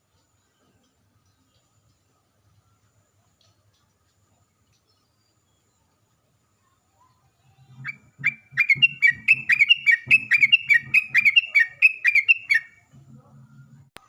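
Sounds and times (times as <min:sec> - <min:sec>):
bird singing fast whistled notes: 0:07.8 - 0:12.8.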